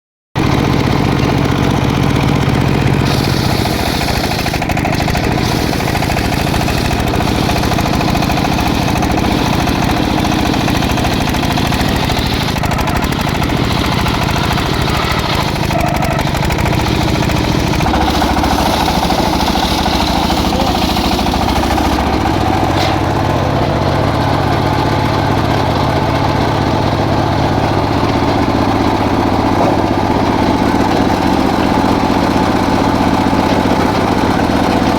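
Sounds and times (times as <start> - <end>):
sawmill engine running: 0.4 - 34.9.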